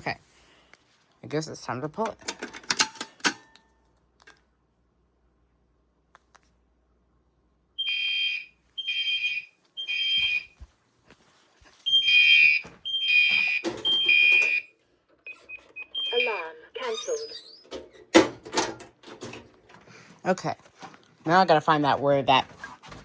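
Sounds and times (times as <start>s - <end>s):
fire alarm horn beeps: 7.8s - 10.5s, 11.9s - 17.3s.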